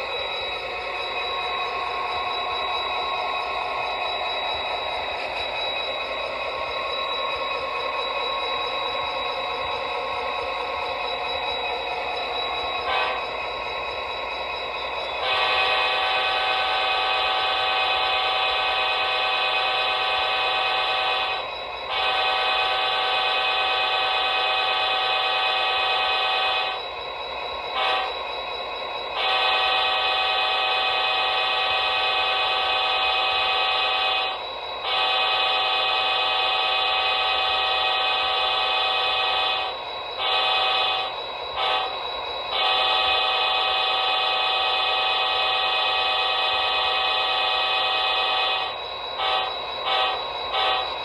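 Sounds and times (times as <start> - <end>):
horn blasts: 12.8 - 13.3, 15.2 - 18.6, 20.2 - 26.8, 27.7 - 28.2, 29.2 - 45.8, 46.5 - 51.0.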